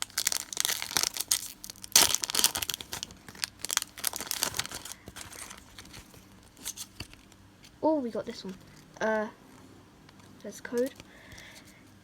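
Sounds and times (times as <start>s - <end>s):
foil wrapper tearing and crinkling: 0.0s - 7.3s.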